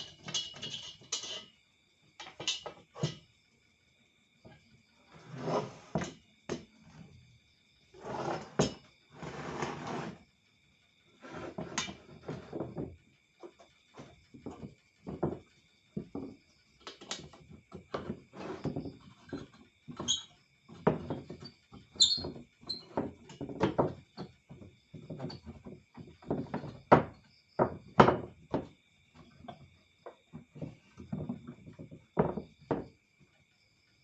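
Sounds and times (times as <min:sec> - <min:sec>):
knocks and thuds: 0:14.3 - 0:16.4, 0:23.0 - 0:33.0.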